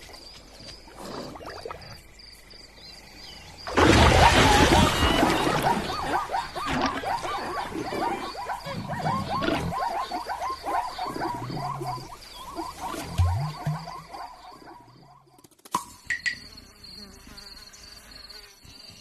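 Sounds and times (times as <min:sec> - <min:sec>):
loud animal call burst: 0:03.7 - 0:10.2.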